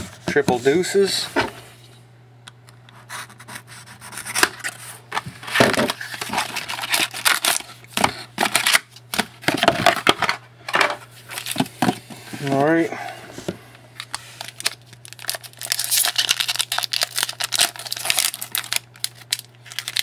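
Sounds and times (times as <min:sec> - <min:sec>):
wrapper and cards rustling: 0:14.0 - 0:20.0.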